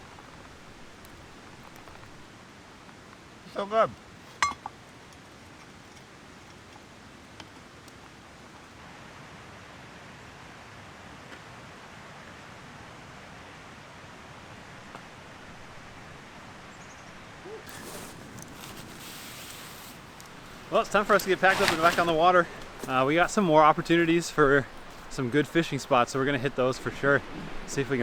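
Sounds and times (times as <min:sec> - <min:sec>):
river rapids rushing: 0:11.6 - 0:28.0
handling noise: 0:17.5 - 0:26.0.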